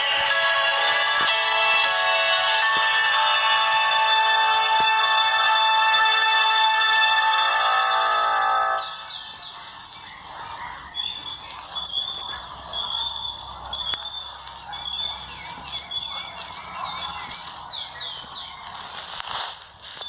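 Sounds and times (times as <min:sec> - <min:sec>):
high-pitched animal chirps: 0:07.9 - 0:19.3.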